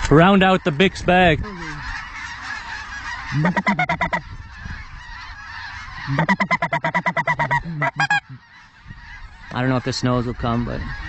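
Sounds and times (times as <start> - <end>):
chorus of distant geese: 0.0 - 11.0
goose clucking and honking: 1.4 - 11.0.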